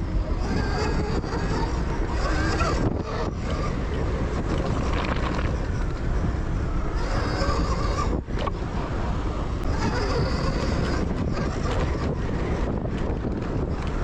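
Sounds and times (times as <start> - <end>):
high thin motor whine: 0.0 - 14.0
wind buffeting microphone: 0.0 - 14.0.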